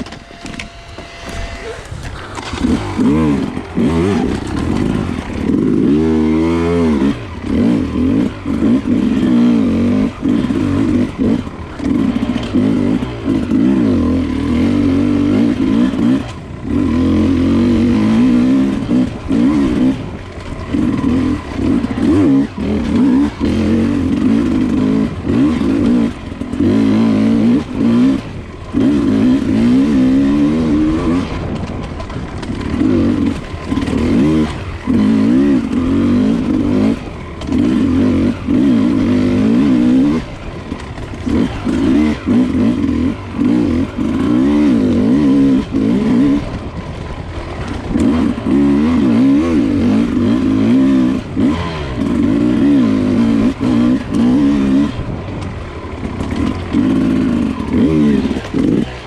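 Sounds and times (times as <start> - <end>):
dirt bike engine revving: 0.0 - 59.0.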